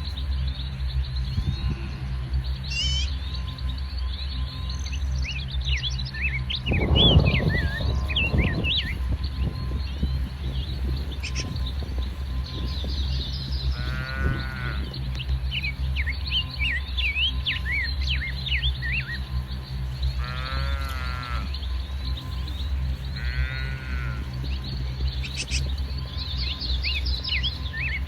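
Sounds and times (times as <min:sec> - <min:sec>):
birds chirping: 0:00.0 - 0:28.0
low rumble: 0:00.0 - 0:28.0
young animal bleating: 0:13.8 - 0:14.9, 0:20.2 - 0:21.5, 0:23.2 - 0:24.4.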